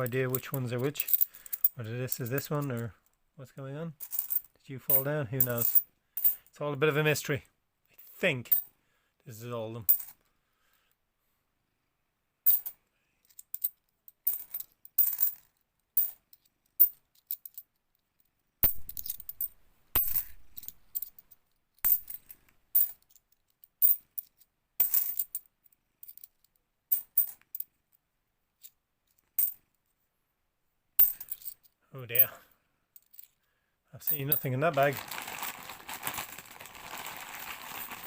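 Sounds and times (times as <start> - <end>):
coins clinking: 0.0 - 2.8, 4.0 - 6.4, 12.5 - 12.7, 18.6 - 23.0, 31.0 - 31.6, 32.2 - 32.4, 34.1 - 35.0.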